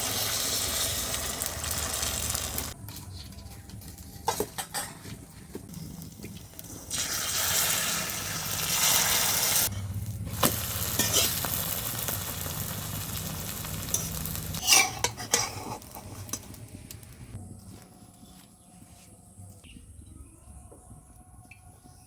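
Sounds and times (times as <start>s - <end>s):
egg frying in oil: 0.0s - 2.8s, 6.0s - 17.4s
spatula scraping a pan: 11.0s - 11.4s, 13.9s - 16.6s.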